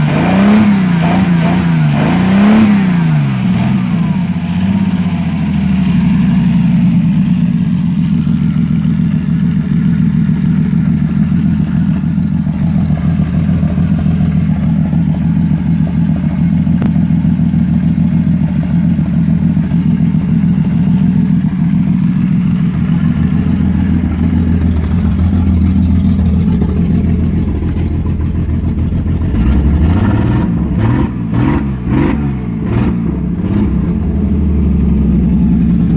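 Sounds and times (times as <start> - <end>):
car engine running roughly: 0.0 - 35.9.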